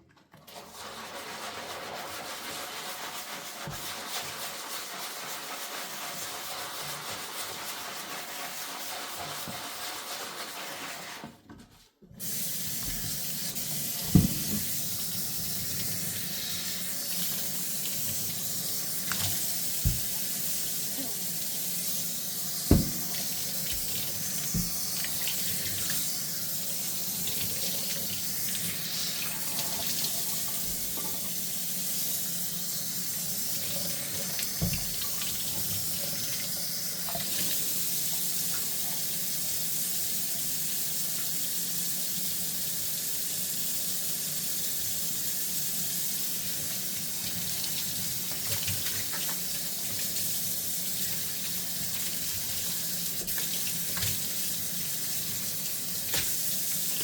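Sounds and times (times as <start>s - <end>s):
tap running into a sink: 12.7s - 16.0s, 19.0s - 20.8s, 22.6s - 26.0s, 29.2s - 31.4s, 34.1s - 38.8s, 51.1s - 54.4s, 55.4s - 56.6s.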